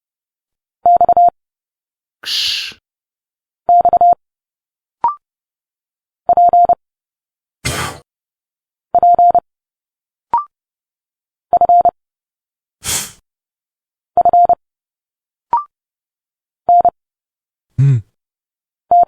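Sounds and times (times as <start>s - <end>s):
person speaking letter sounds: 2.2s - 2.8s.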